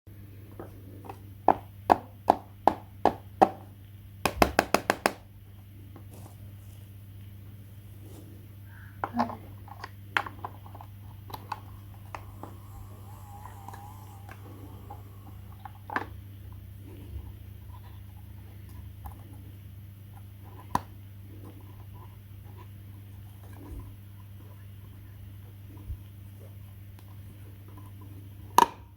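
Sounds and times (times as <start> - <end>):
low hum: 5.3 - 22.6.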